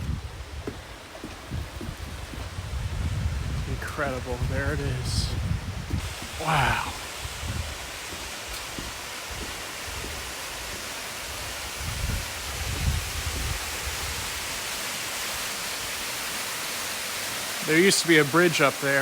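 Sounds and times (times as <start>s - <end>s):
low rumbles: 0.0s - 10.2s
waterfall rushing: 3.9s - 19.0s.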